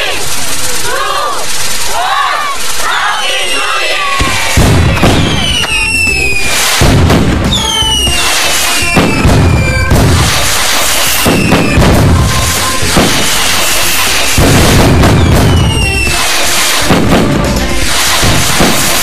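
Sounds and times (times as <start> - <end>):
fireworks booming: 0.0 - 19.0
fireworks crackling: 0.0 - 19.0
whistling firework shells: 2.6 - 17.0.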